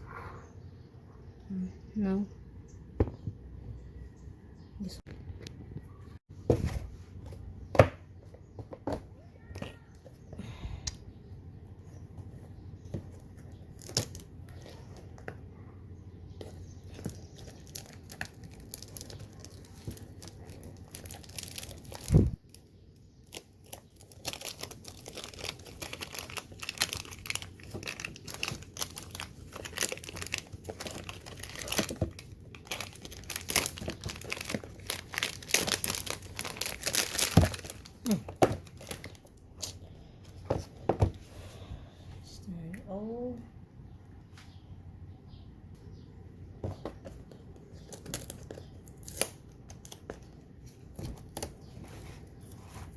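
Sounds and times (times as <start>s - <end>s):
packaging crinkling and rustling: 12.3s - 15.4s, 16.3s - 39.8s, 46.7s - 52.9s.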